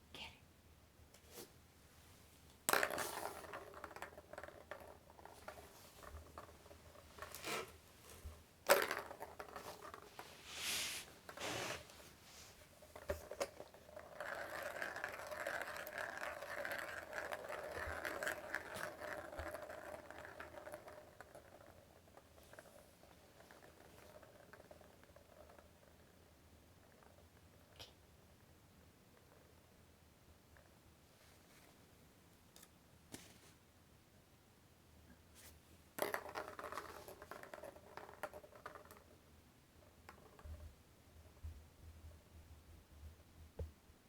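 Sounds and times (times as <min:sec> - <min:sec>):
short rustle: 0:10.4 - 0:12.6.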